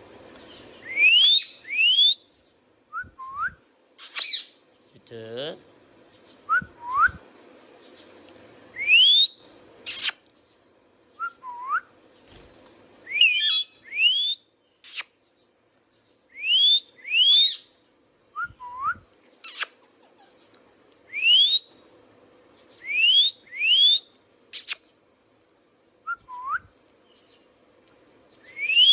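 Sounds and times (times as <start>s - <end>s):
parrot whistling and squawking: 0.8s - 2.2s, 4.0s - 4.6s, 8.8s - 10.2s, 13.1s - 15.1s, 16.4s - 17.7s, 19.4s - 20.3s, 21.1s - 21.7s, 22.8s - 24.8s, 28.5s - 28.9s.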